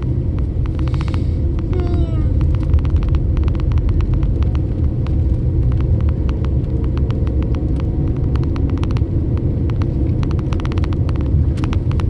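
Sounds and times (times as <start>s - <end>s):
road and tyre rumble: 0.0s - 12.0s
quick sharp ticks: 2.4s - 12.0s.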